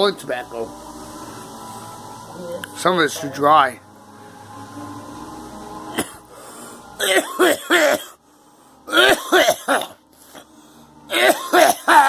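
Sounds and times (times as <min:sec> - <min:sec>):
person coughing: 0:05.9 - 0:06.2, 0:07.0 - 0:08.2, 0:08.9 - 0:10.0, 0:11.1 - 0:12.0.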